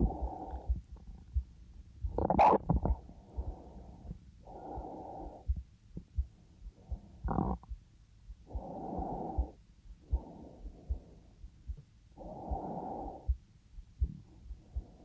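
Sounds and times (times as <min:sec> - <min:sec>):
woman breathing slowly: 0:00.0 - 0:01.4, 0:03.0 - 0:07.7, 0:08.4 - 0:13.4, 0:14.0 - 0:15.0
heartbeat thudding: 0:00.0 - 0:15.0.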